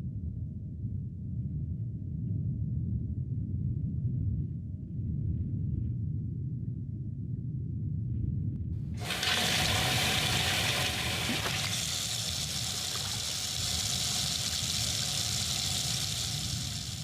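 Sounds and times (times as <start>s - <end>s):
rushing hissing noise: 9.0s - 17.0s.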